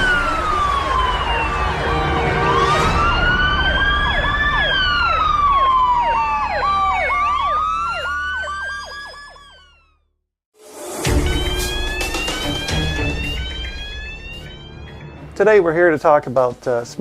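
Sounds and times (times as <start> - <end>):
yelping siren: 0.0 - 10.1
wailing siren: 0.0 - 10.2, 11.7 - 15.4.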